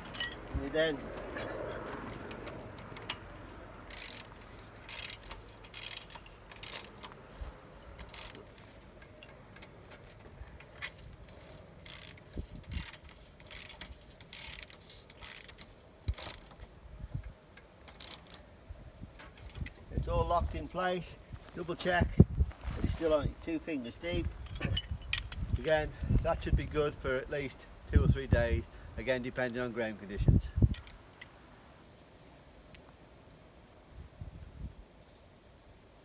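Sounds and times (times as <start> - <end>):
socket wrench ratchet clicking: 3.9 - 7.1, 11.8 - 16.5.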